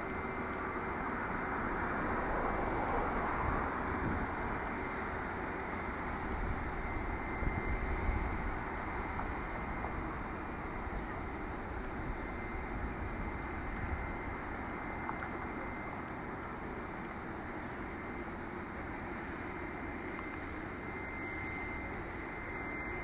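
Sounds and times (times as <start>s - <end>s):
faint steady whine: 0.0s - 23.0s
jet engine noise: 0.0s - 23.0s
wind rumble on microphone: 2.1s - 4.7s, 6.1s - 14.5s.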